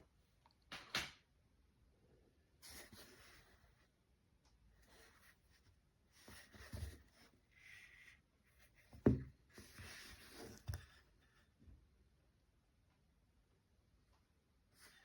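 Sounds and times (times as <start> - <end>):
objects rustling and scraping: 4.8 - 11.2
dull thump: 8.9 - 9.4.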